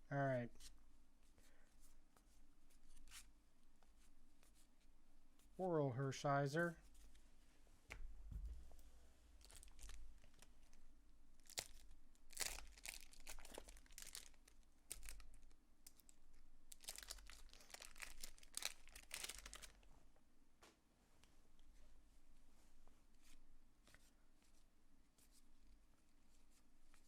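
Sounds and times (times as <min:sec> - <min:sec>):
wrapper crinkling and tearing: 0:09.4 - 0:10.8, 0:11.4 - 0:19.9.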